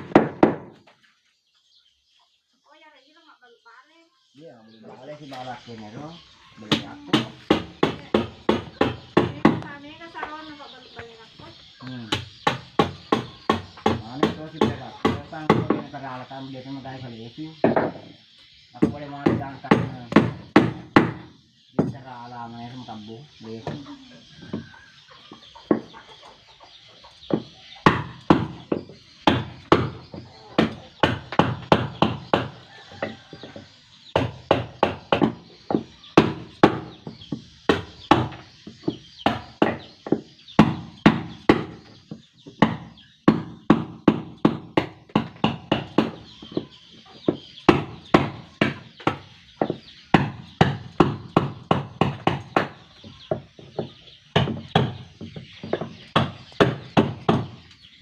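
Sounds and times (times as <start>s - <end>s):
tool striking wood: 0.0s - 0.8s, 6.6s - 9.7s, 12.1s - 16.1s, 17.6s - 18.2s, 18.8s - 22.0s, 27.3s - 33.5s, 34.2s - 57.6s.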